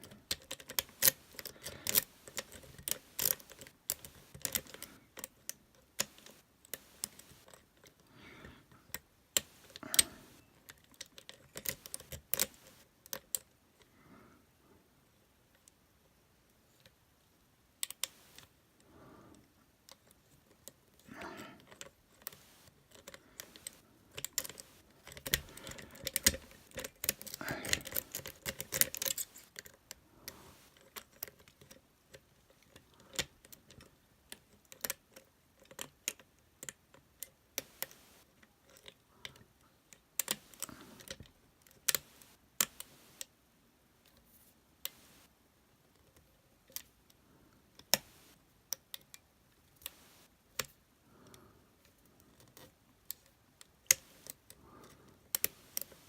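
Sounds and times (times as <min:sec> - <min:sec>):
lock picks clicking in padlock: 0:00.0 - 0:08.0, 0:19.9 - 0:38.1.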